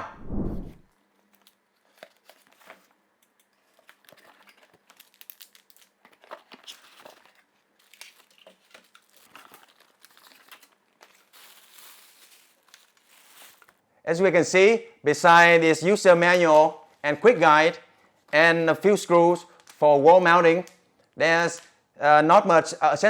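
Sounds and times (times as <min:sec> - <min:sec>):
crinkling of plastic wrapping: 0:00.9 - 0:13.8, 0:19.4 - 0:19.8.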